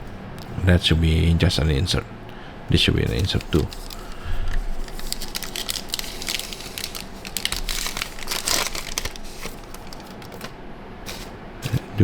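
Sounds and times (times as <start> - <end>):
cards being handled: 3.0 - 12.0
foil wrapper crinkling: 3.0 - 12.0.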